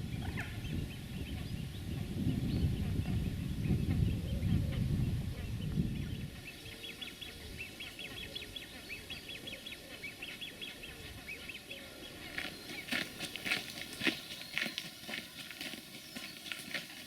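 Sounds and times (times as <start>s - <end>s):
birds chirping: 0.0s - 17.0s
wind buffeting microphone: 0.0s - 17.0s
footstep clicks: 12.3s - 17.0s.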